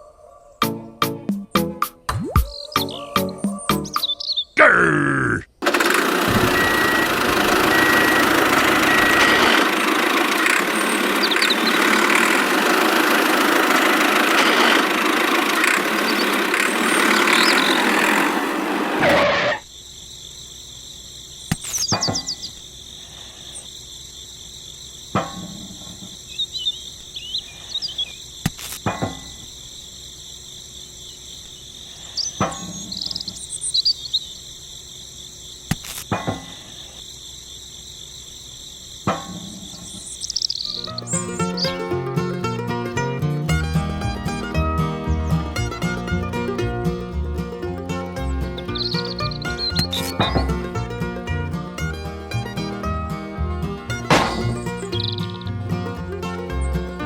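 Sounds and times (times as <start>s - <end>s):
bird chirps: 2.1s - 4.6s, 10.5s - 12.3s, 16.0s - 18.0s, 21.3s - 22.8s, 25.6s - 28.4s, 30.9s - 34.5s, 39.4s - 42.0s, 48.2s - 50.6s, 53.9s - 55.6s
crickets chirping: 2.5s - 18.3s, 19.3s - 45.4s, 47.5s - 57.0s
sharp knocks: 50.2s - 50.7s, 54.0s - 54.7s.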